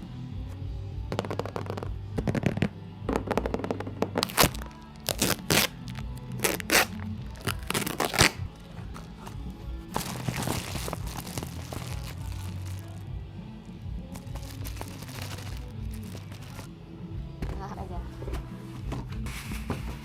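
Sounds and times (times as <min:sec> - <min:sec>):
background music: 0:00.0 - 0:20.0
packaging crinkling and cracking: 0:07.5 - 0:08.4, 0:10.0 - 0:12.9, 0:14.2 - 0:16.7.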